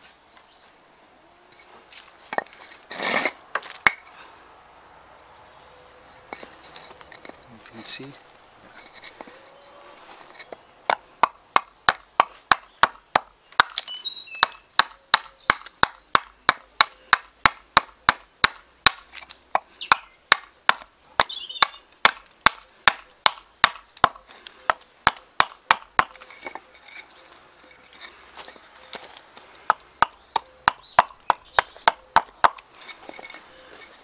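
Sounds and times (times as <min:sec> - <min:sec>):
axe striking wood: 0:10.9 - 0:26.6, 0:29.7 - 0:32.6.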